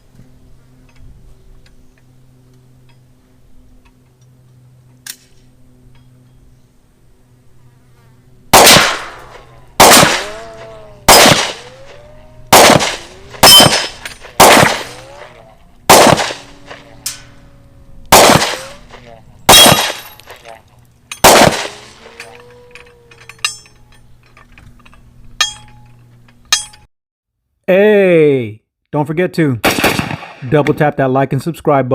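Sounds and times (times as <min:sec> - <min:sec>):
faint steady hum: 0:00.0 - 0:26.9
pistol shots ringing: 0:08.5 - 0:15.3, 0:15.9 - 0:17.3, 0:18.1 - 0:20.5, 0:21.2 - 0:22.4.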